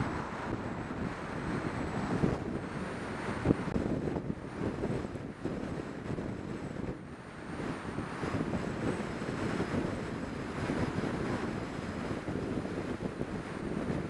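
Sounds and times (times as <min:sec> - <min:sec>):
car engine and road noise: 0:00.0 - 0:14.0
wind on microphone: 0:00.0 - 0:14.0.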